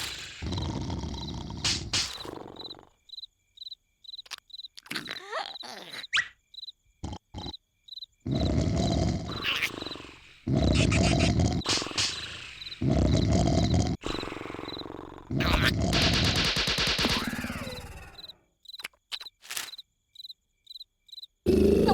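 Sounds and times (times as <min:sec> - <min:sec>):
cartoon snoring: 0:00.0 - 0:02.9, 0:07.0 - 0:07.6, 0:08.2 - 0:16.5, 0:21.5 - 0:21.9
crickets chirping: 0:00.0 - 0:21.9
short squeaks and clicks: 0:18.2 - 0:19.8.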